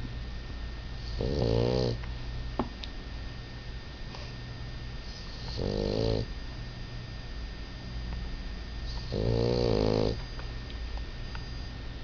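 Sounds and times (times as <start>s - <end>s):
dog snoring: 1.0s - 2.0s, 5.0s - 6.3s, 8.8s - 10.2s.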